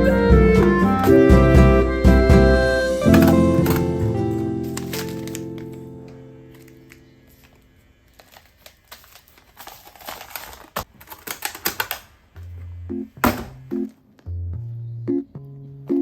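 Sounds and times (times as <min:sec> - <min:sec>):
background music: 0:00.0 - 0:07.6, 0:12.4 - 0:16.0
low piano notes: 0:00.0 - 0:07.9
kitchen containers clicking and rustling: 0:03.1 - 0:04.1, 0:04.7 - 0:05.8, 0:06.6 - 0:12.2.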